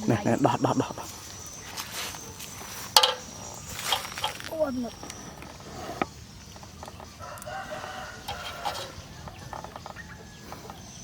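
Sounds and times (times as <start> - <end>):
rooster crowing: 7.0 - 10.6.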